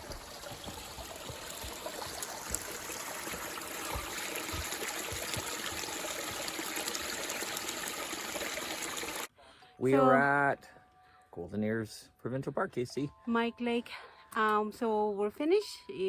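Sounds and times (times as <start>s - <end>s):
running water rushing: 0.0s - 9.3s.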